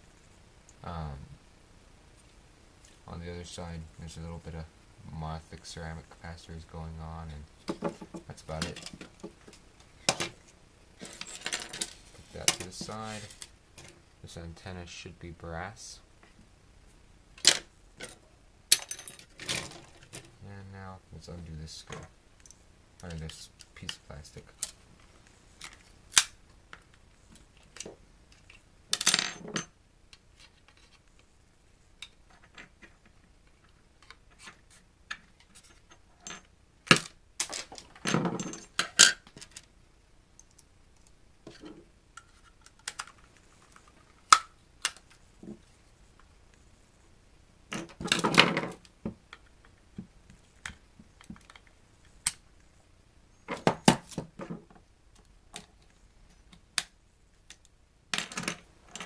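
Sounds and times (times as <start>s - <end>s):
small parts clattering: 7.7s - 10.4s, 11.0s - 14.0s, 17.4s - 20.4s, 32.0s - 39.7s, 47.7s - 49.5s.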